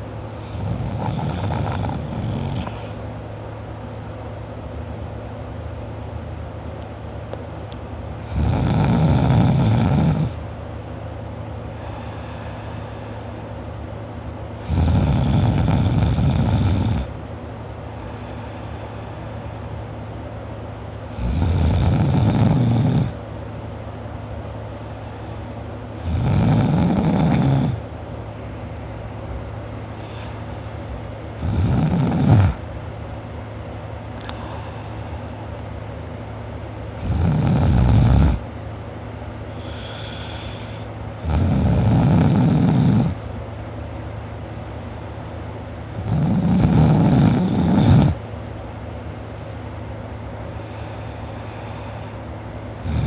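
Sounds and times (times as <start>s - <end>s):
steady low hum: 0.0s - 53.0s
person snoring: 0.4s - 3.0s, 8.3s - 10.4s, 14.6s - 17.1s, 21.1s - 23.2s, 26.0s - 27.8s, 31.4s - 32.6s, 37.0s - 38.4s, 39.6s - 43.2s, 46.0s - 48.2s, 52.8s - 53.0s.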